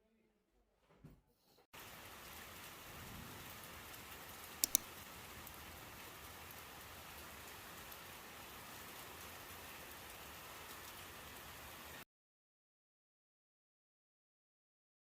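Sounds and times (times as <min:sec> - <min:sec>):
rain-like hiss: 0:01.8 - 0:12.0
sharp clicks: 0:04.6 - 0:04.9.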